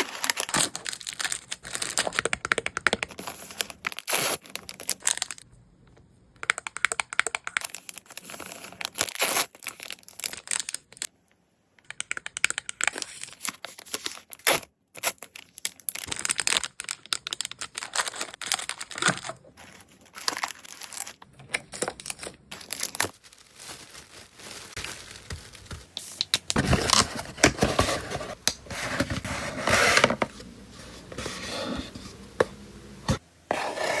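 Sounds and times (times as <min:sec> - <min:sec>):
plastic and paper crinkling: 0:00.0 - 0:05.5, 0:06.4 - 0:11.1, 0:12.1 - 0:28.4.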